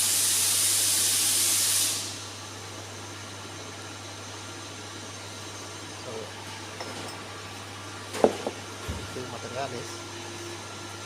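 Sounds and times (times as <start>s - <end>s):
compressed air hiss: 0.0s - 2.4s
low machine hum: 2.0s - 11.0s.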